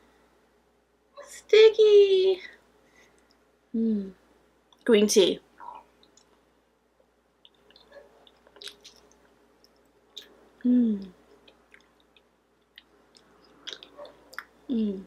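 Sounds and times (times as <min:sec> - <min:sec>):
person chewing wetly: 0:07.4 - 0:10.4, 0:11.3 - 0:14.6.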